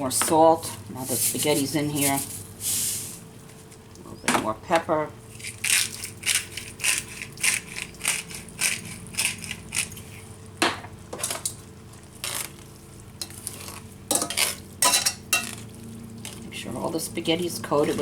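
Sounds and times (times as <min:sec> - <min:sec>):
pepper mill grinding: 0:05.3 - 0:10.3
utensil scraping pan: 0:12.2 - 0:12.6, 0:13.2 - 0:16.4.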